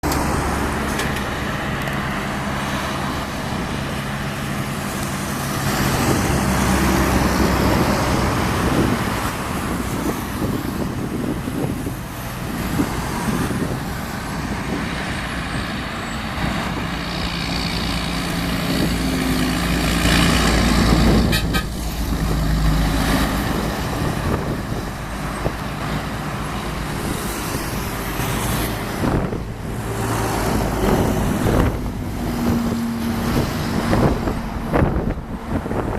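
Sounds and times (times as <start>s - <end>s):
diesel truck engine driving past: 12.4s - 35.9s.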